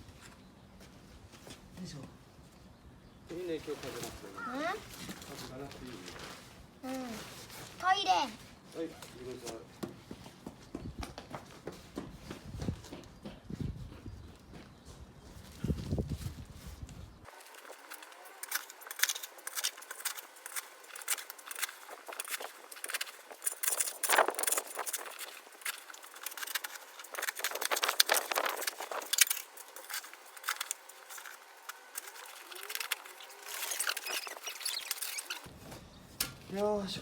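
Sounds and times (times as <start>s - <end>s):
shovel digging in gravel: 17.3s - 35.5s.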